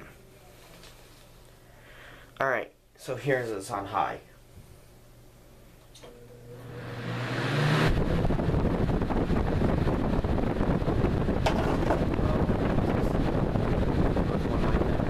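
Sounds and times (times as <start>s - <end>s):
fan motor humming: 5.1s - 15.0s
rush of air: 6.7s - 11.4s
wind rumble on microphone: 7.4s - 15.0s.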